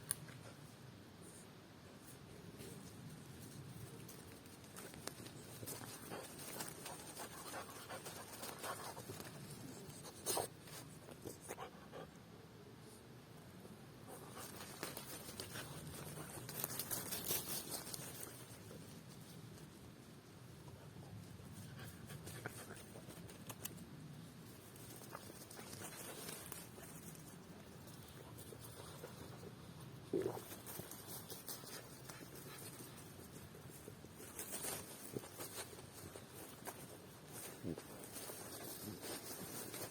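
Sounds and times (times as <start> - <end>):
paws rustling in leaf litter: 14.1 - 19.8, 24.6 - 39.9
rustling through dry leaf litter: 30.2 - 39.9.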